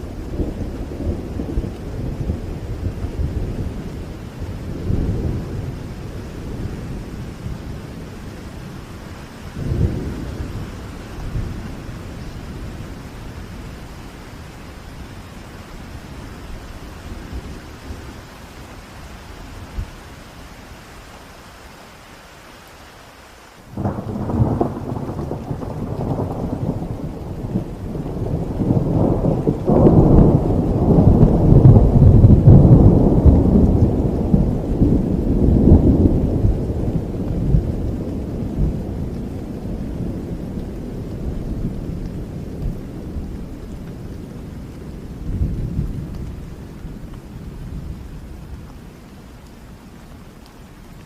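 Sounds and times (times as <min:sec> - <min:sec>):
heavy rain: 0:00.0 - 0:51.0
thunderclap: 0:23.8 - 0:46.4.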